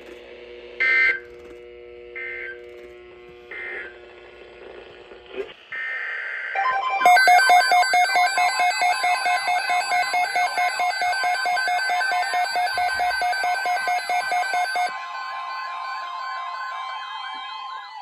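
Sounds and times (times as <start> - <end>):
electronic alarm beeping rapidly: 6.6 - 17.2.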